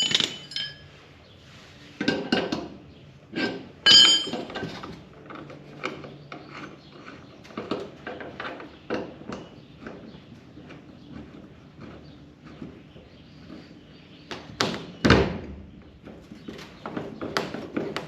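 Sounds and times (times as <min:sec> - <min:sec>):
ringing metallic clanks: 0:00.0 - 0:01.0, 0:03.3 - 0:04.9.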